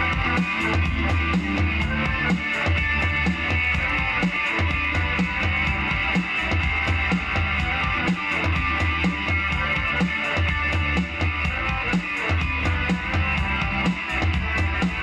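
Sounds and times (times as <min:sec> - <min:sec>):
rock band playing: 0:00.0 - 0:15.0.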